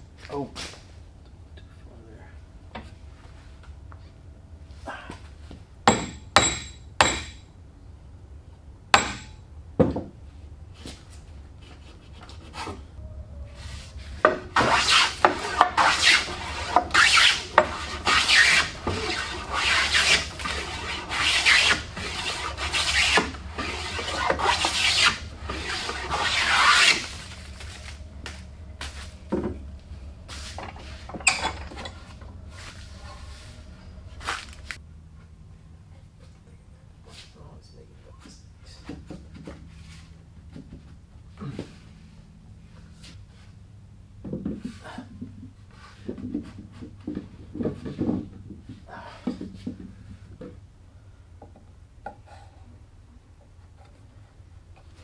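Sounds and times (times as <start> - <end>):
sharp knocks with metallic ring: 5.9 - 7.5, 9.0 - 9.4
hand tool rasping on wood: 14.6 - 27.1.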